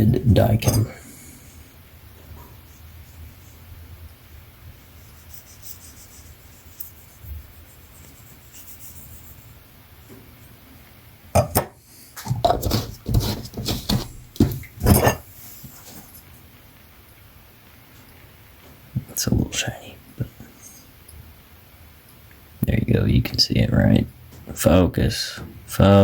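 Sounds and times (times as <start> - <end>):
small objects clattering on workbench: 12.2 - 15.2.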